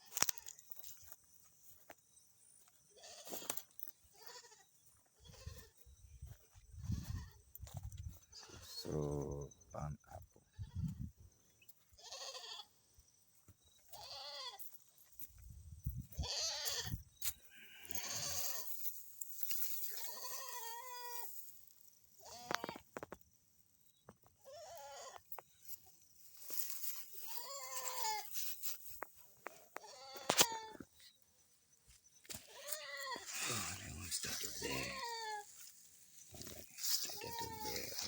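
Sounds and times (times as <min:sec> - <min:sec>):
goat bleating: 0:03.0 - 0:03.5, 0:04.1 - 0:05.8, 0:12.0 - 0:12.7, 0:13.9 - 0:14.7, 0:16.2 - 0:16.9, 0:17.6 - 0:18.7, 0:19.9 - 0:21.3, 0:22.2 - 0:22.8, 0:24.4 - 0:25.3, 0:27.2 - 0:28.3, 0:29.8 - 0:30.8, 0:34.3 - 0:35.6, 0:37.0 - 0:38.0.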